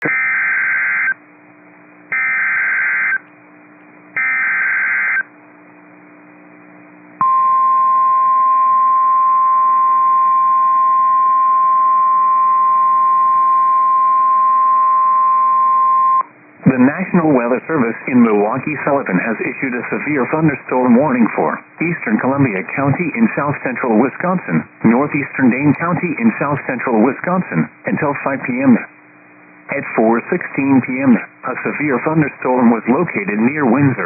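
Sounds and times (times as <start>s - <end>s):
steady warning alarm tone: 2.1s - 3.2s, 4.2s - 5.3s.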